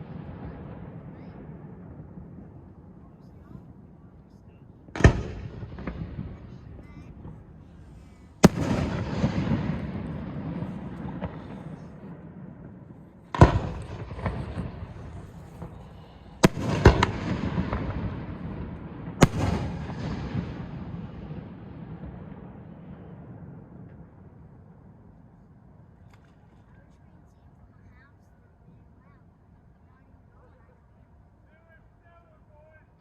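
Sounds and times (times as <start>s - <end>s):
fireworks bangs: 0.0s - 3.9s, 4.5s - 24.2s
rolling rumble: 4.8s - 24.1s.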